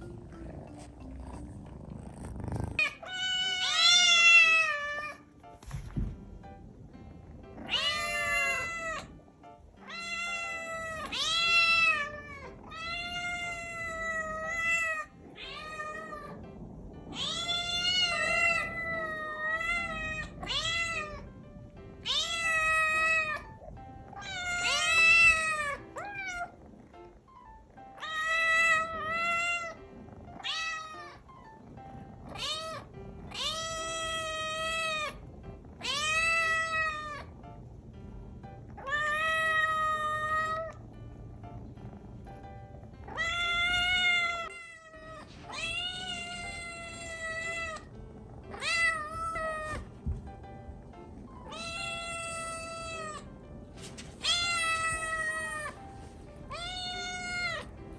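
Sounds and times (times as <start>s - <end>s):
kitten meowing: 2.8s - 5.2s, 17.1s - 21.3s, 43.1s - 47.9s, 48.5s - 49.9s, 51.4s - 53.3s, 56.5s - 57.7s.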